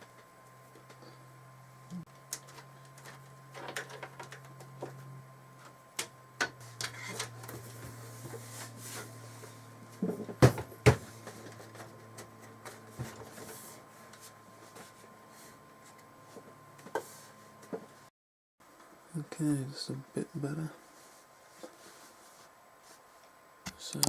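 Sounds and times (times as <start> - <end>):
clicks and knocks of computer parts: 2.3 - 5.0.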